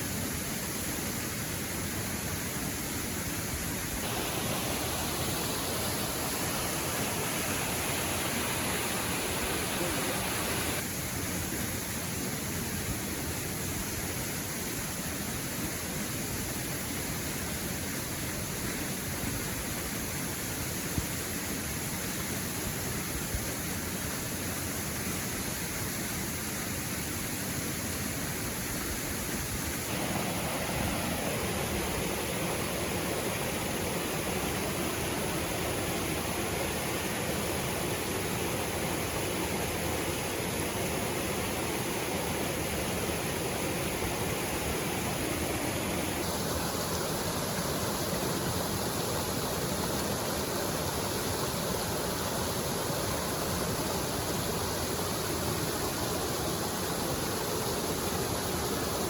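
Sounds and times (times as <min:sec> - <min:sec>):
waterfall rushing: 0:00.0 - 0:11.0, 0:28.0 - 0:59.0.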